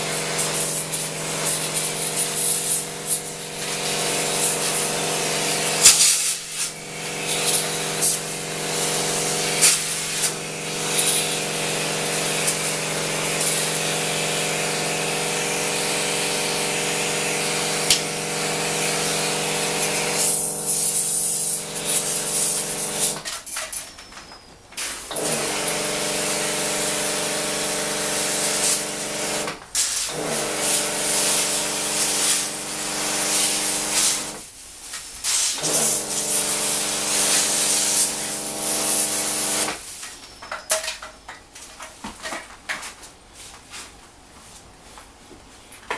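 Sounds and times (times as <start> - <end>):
pressure washer motor hum: 0.0 - 23.3, 25.1 - 34.4, 35.6 - 39.8
water spray hissing: 25.3 - 34.4, 35.2 - 39.8.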